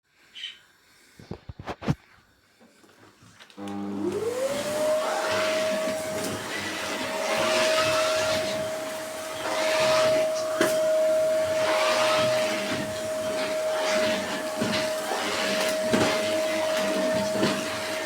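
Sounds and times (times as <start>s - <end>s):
vacuum cleaner running: 3.6s - 18.0s.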